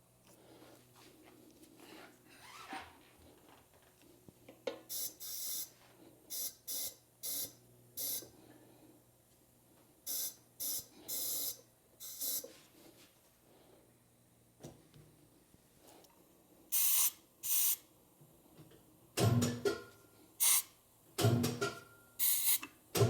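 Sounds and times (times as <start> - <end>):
short hissing bursts: 10.1 - 12.5, 16.7 - 17.9, 20.4 - 20.8.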